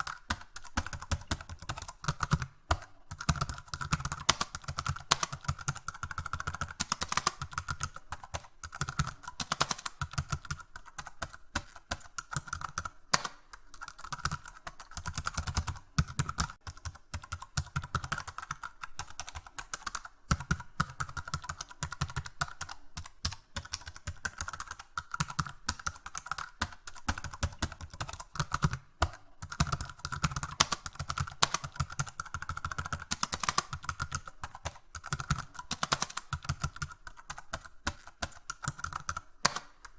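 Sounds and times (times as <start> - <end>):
typing on computer keyboard: 0.0 - 39.9.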